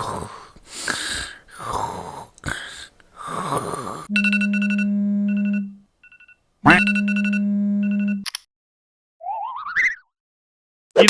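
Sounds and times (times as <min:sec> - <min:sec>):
person snoring: 0:00.0 - 0:04.1
phone alarm ringtone: 0:04.1 - 0:08.3.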